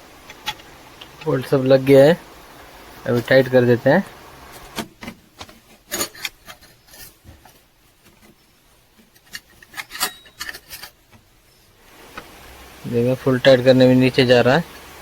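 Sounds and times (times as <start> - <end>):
spanner clicking and scraping: 5.9 - 7.2, 9.2 - 11.0.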